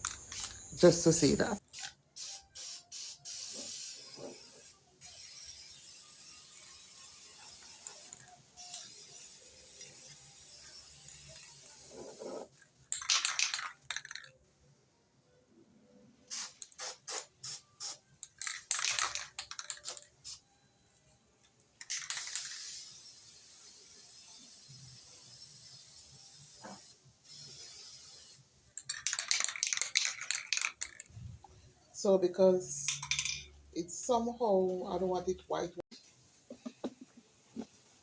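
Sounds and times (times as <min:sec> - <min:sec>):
spray can clicks and rattles: 0:00.0 - 0:00.8, 0:01.7 - 0:14.3, 0:16.3 - 0:20.4, 0:21.8 - 0:31.1, 0:32.9 - 0:33.4
spray paint can hissing: 0:00.0 - 0:12.6, 0:16.3 - 0:18.0, 0:18.7 - 0:20.4, 0:21.8 - 0:31.0.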